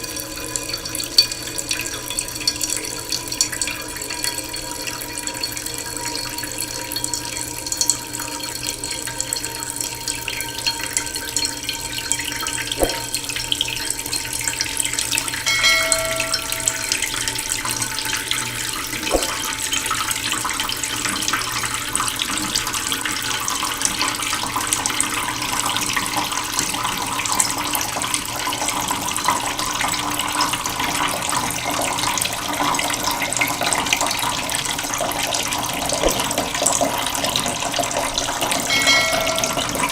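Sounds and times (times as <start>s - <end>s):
short pitched tone: 15.5s - 17.7s.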